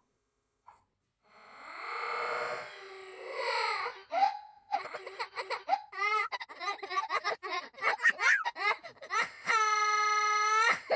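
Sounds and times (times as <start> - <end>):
cartoon-style sobbing voice: 3.5 - 10.9.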